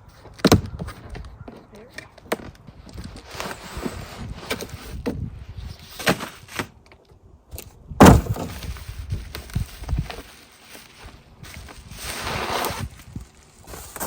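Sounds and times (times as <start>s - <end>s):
sharp knocks: 8.0s - 8.6s
loud thump: 8.0s - 8.7s
cardboard box tearing: 8.0s - 8.8s, 11.8s - 14.0s.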